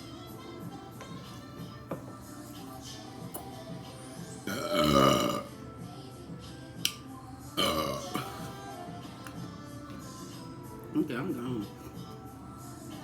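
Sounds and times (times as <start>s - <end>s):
person burping: 4.5s - 5.5s, 7.6s - 8.4s.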